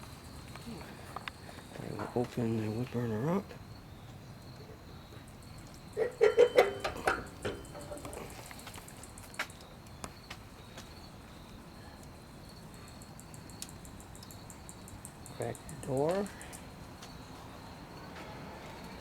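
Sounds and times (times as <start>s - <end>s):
crickets chirping: 0.0s - 19.0s
metal stove door clanking: 6.0s - 8.2s.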